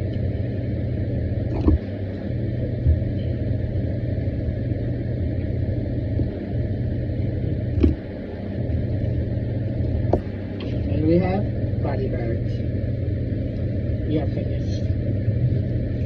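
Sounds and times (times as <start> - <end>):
low engine rumble: 0.0 - 16.0.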